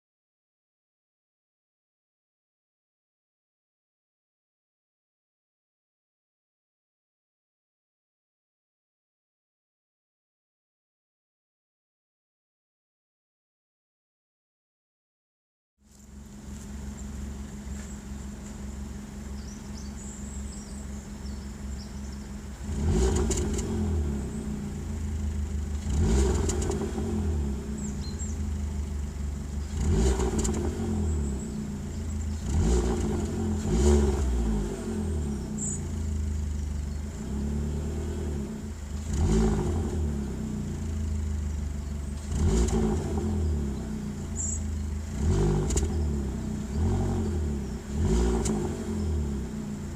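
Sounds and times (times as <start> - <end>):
car engine idling and revving: 15.8 - 49.9.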